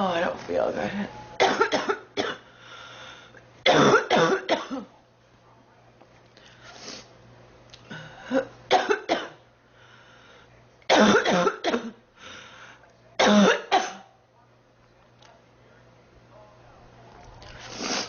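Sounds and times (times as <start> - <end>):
girl coughing: 1.4 - 2.4, 3.7 - 4.9, 8.2 - 9.4, 10.9 - 12.0, 13.2 - 14.1.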